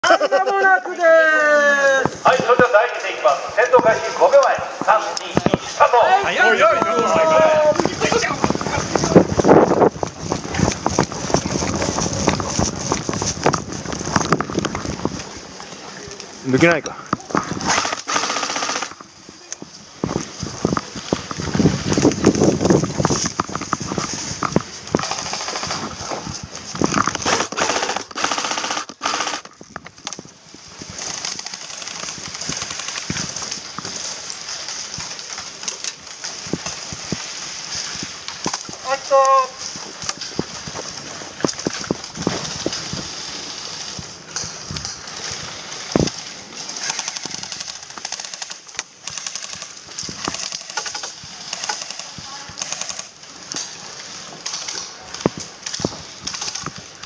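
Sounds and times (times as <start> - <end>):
airsoft gun rattling bursts: 17.3 - 19.1, 21.4 - 26.0, 26.8 - 30.2, 30.8 - 34.0, 44.5 - 53.6, 55.6 - 57.0
airsoft guns firing bursts: 17.6 - 19.0, 25.0 - 25.8, 27.2 - 29.5, 46.8 - 49.7.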